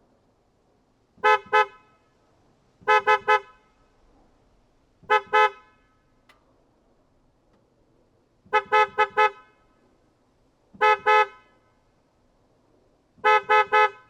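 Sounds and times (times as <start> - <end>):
car horn beeps: 1.2 - 2.2, 2.8 - 3.8, 5.0 - 6.3, 8.5 - 9.8, 10.8 - 11.7, 13.2 - 14.0.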